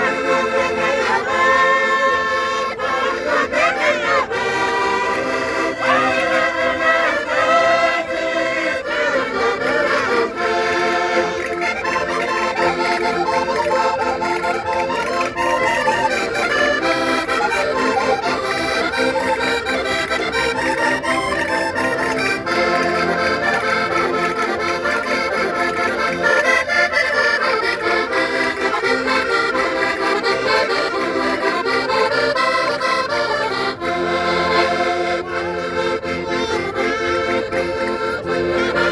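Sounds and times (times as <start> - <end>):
button accordions playing a tune: 0.0 - 38.9.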